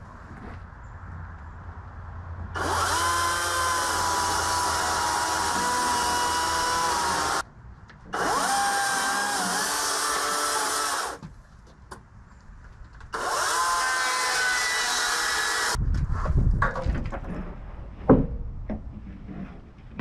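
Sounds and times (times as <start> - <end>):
electric chainsaw cutting wood: 2.6 - 7.4, 8.1 - 11.2, 13.1 - 15.8.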